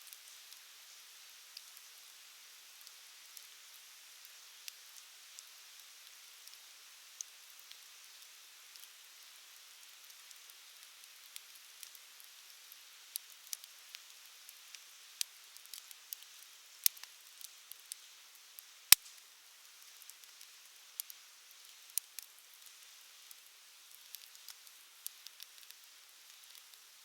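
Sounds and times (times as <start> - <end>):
wood fire crackling: 10.1 - 12.0, 13.1 - 18.0, 18.9 - 27.0.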